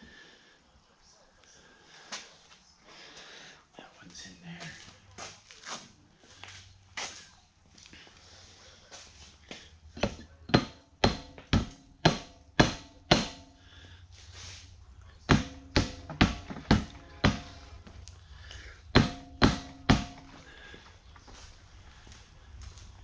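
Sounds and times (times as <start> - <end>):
hammer striking metal: 10.0 - 13.6, 15.3 - 17.9, 18.9 - 20.5.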